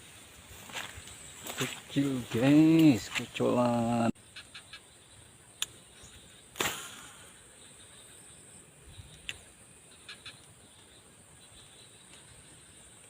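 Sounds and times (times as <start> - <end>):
insects droning: 0.0 - 13.0
faint clicks: 5.6 - 5.8, 9.1 - 9.5.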